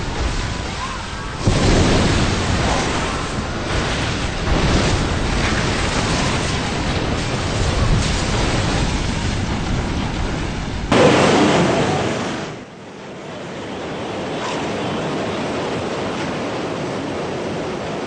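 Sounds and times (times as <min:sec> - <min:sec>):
wind noise on microphone: 0:00.0 - 0:11.0
sea waves breaking: 0:00.0 - 0:18.0.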